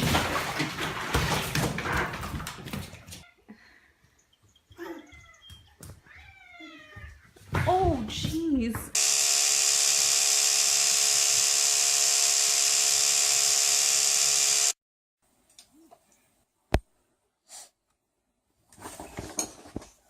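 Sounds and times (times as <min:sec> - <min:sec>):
small electric motor hissing: 0:09.0 - 0:14.8.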